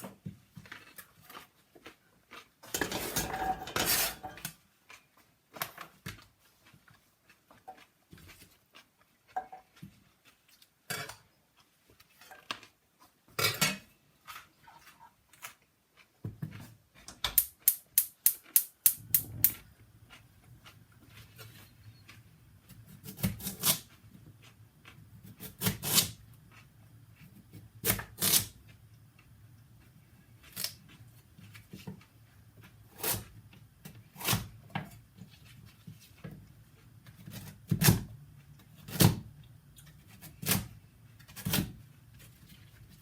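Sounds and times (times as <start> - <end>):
scraping and rustling: 2.6 - 13.2
utensils clicking and knocking: 17.1 - 19.6.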